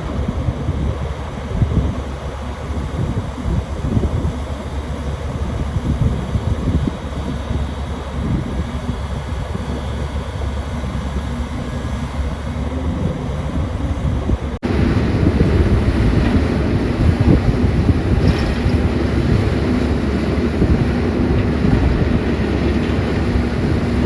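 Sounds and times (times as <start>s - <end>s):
excavator diesel engine rumbling: 0.0s - 24.0s.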